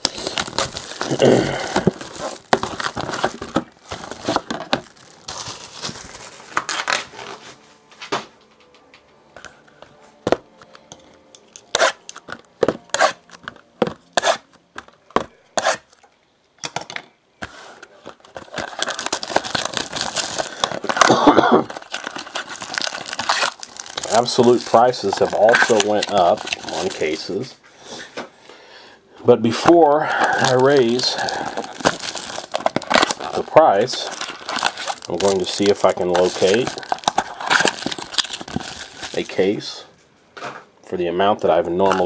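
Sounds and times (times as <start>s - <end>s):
cardboard tearing: 0.0s - 7.3s, 12.7s - 13.3s, 18.3s - 27.1s, 30.4s - 39.2s
plastic crinkling: 0.0s - 7.6s, 17.4s - 27.5s, 30.2s - 39.7s.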